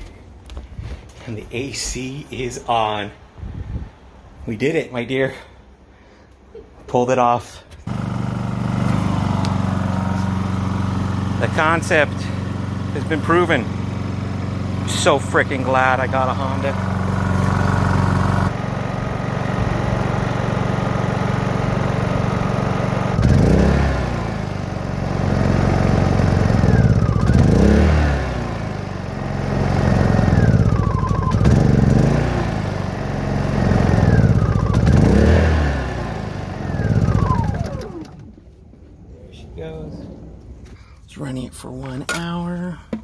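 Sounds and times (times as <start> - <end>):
generator engine running: 7.8 - 38.5.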